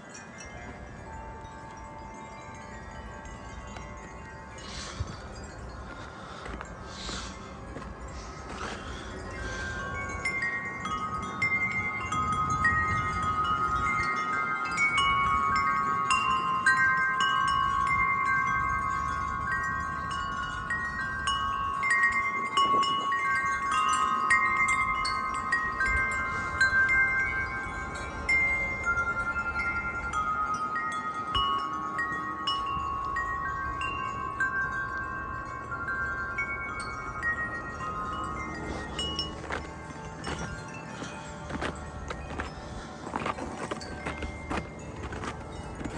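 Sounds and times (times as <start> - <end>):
wind chimes ringing: 0.0 - 45.9.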